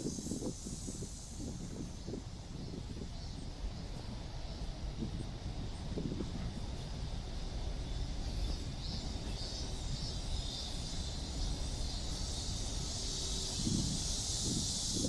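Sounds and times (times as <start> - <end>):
wind on microphone: 0.0 - 7.4, 11.4 - 15.0
cicadas buzzing: 0.0 - 15.0.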